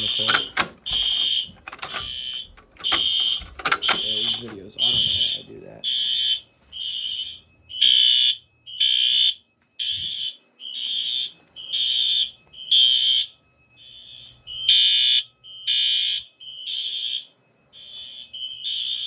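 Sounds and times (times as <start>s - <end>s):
fire alarm horn blasts: 0.0s - 19.0s.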